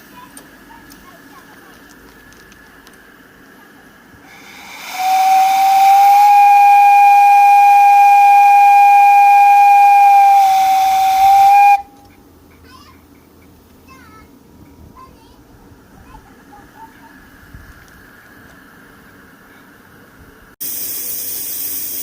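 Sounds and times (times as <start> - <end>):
steam whistle blast: 4.3 - 11.9.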